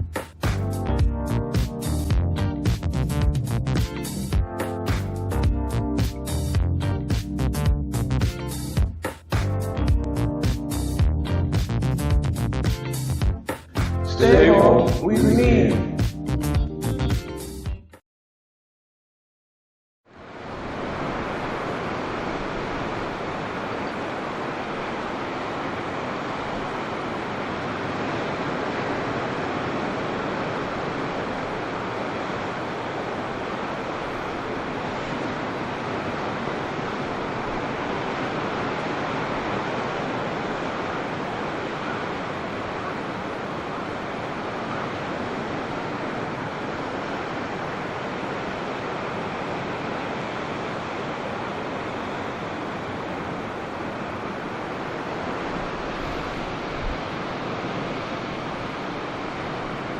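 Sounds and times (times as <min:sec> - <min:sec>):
ocean surf breaking on shore: 0:14.1 - 0:15.7, 0:20.1 - 0:59.9.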